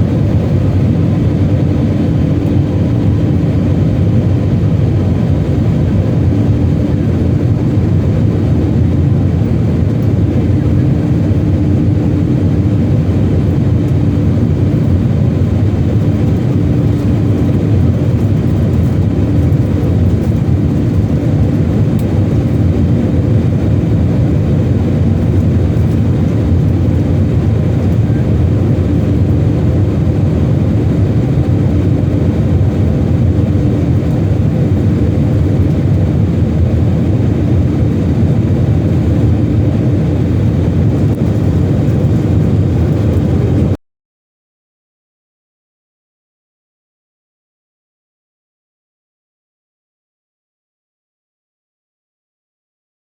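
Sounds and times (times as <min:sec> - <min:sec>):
airplane cabin engine rumble: 0:00.0 - 0:43.8
steady hum: 0:00.0 - 0:43.8.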